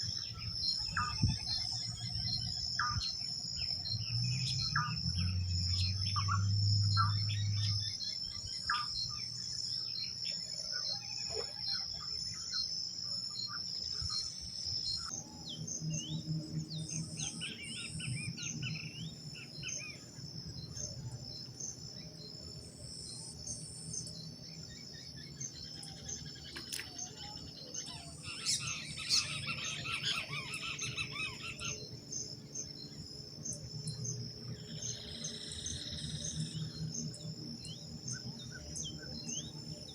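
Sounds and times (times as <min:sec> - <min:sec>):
pulsing insect trill: 0:00.0 - 0:39.9
birds chirping and calling: 0:25.4 - 0:32.8.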